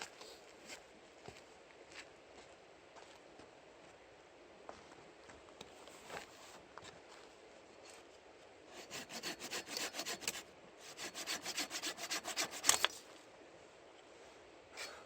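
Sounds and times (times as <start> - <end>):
hand saw cutting wood: 8.7 - 13.0.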